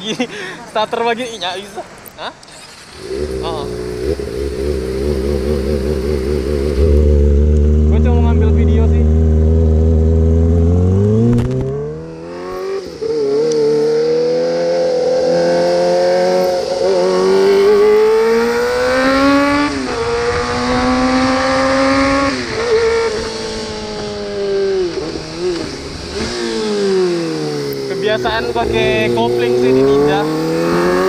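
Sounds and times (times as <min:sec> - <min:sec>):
motorcycle engine revving and shifting: 0:02.4 - 0:31.0
wind rushing over microphone: 0:16.5 - 0:27.5.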